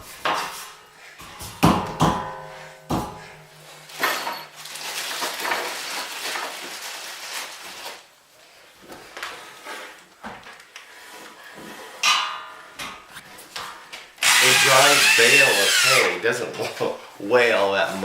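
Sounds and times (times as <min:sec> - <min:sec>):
metallic clattering of tools: 0:00.2 - 0:05.8
sharp knocks: 0:01.3 - 0:04.4.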